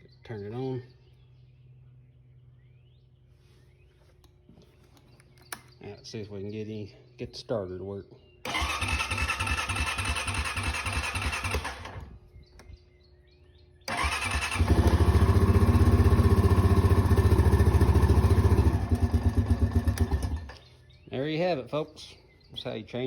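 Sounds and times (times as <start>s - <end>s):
electric starter cranking engine: 8.4s - 12.1s, 13.9s - 20.6s
engine running steadily: 13.9s - 20.6s.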